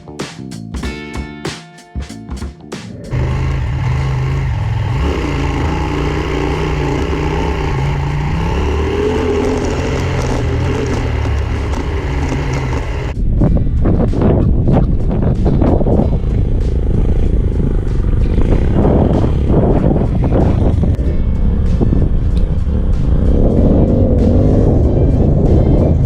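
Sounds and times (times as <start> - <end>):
motorcycle engine running: 2.9 - 26.0
wind and road noise: 2.9 - 26.0.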